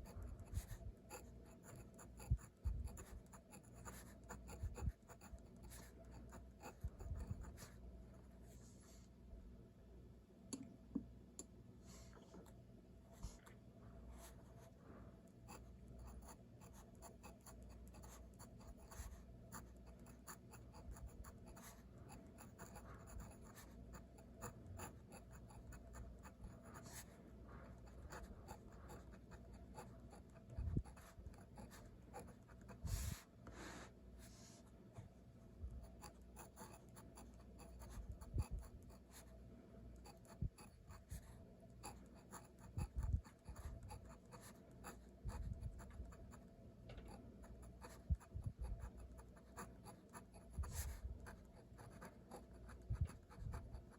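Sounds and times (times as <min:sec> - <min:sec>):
pen scratching on paper: 0:00.0 - 0:07.8, 0:15.5 - 0:33.3, 0:35.8 - 0:39.3, 0:40.0 - 0:46.4, 0:47.1 - 0:53.9.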